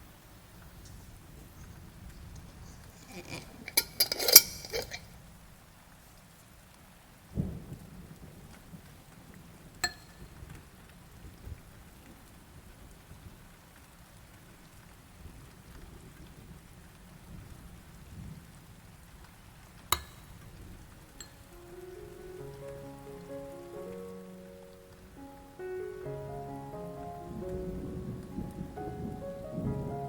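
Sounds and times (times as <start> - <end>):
spoon scraping thick mixture: 2.7 - 5.0
spoon clinking against bowl: 3.0 - 5.0.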